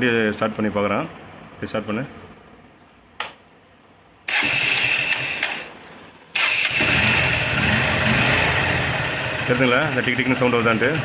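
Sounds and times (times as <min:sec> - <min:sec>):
click: 0:02.9 - 0:03.4
motorcycle engine starting: 0:04.3 - 0:11.0.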